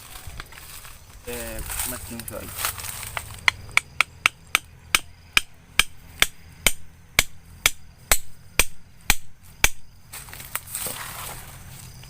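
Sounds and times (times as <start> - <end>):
hand tool striking blows: 3.0 - 9.9.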